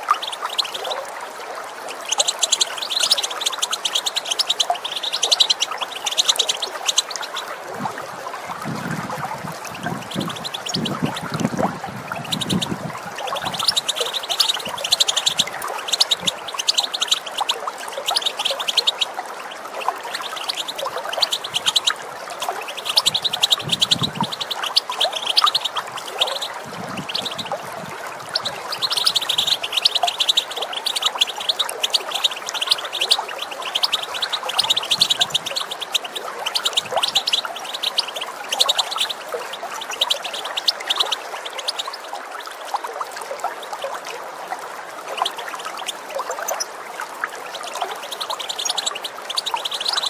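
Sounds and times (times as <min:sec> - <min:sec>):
running water rushing: 0:00.0 - 0:50.0
goldfinch chattering calls: 0:02.0 - 0:07.4, 0:09.8 - 0:11.3, 0:12.1 - 0:19.1, 0:20.1 - 0:22.0, 0:22.6 - 0:27.6, 0:28.2 - 0:42.1, 0:48.0 - 0:50.0.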